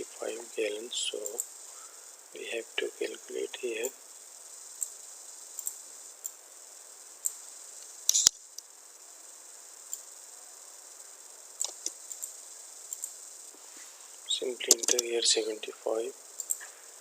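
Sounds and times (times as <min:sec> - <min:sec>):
faint high-pitched hiss: 0:00.0 - 0:17.0
sharp clicks: 0:07.2 - 0:08.7, 0:11.6 - 0:12.3, 0:12.9 - 0:13.2, 0:14.6 - 0:15.2, 0:16.4 - 0:16.7.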